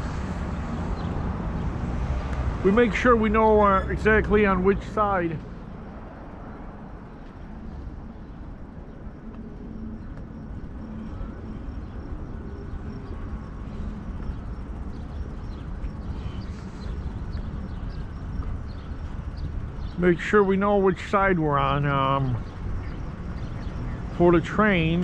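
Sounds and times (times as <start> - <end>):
low traffic rumble: 0.0 - 25.0.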